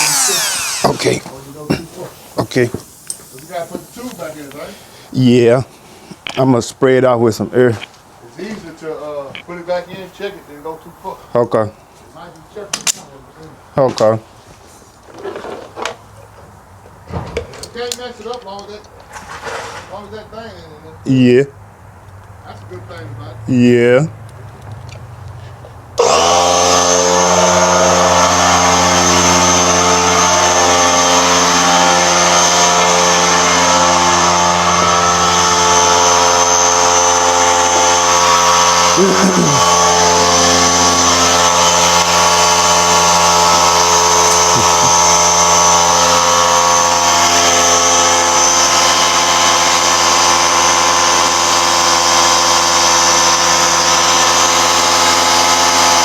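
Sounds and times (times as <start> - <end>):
small electric motor running: 0.0 - 5.3, 9.9 - 11.2, 26.0 - 56.0.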